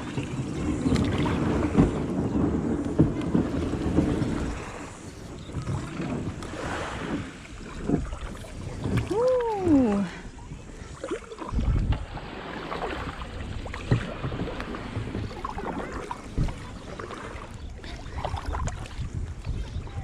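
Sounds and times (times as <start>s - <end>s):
paddle strokes splashing: 0.0s - 20.0s
wind buffeting microphone: 0.0s - 20.0s.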